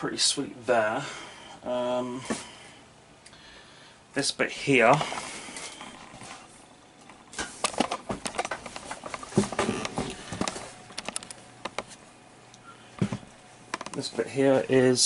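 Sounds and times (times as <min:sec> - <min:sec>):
cables and plugs clicking and rustling: 0:04.8 - 0:14.6.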